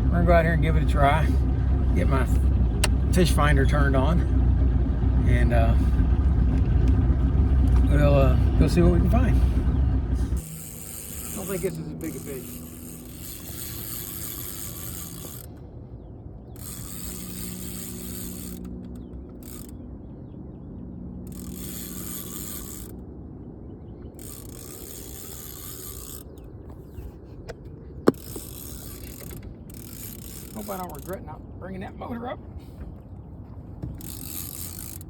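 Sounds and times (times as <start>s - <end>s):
fishing reel gears whirring: 0.2s - 20.0s, 20.9s - 23.0s, 24.0s - 26.7s, 28.0s - 31.4s, 34.0s - 35.0s.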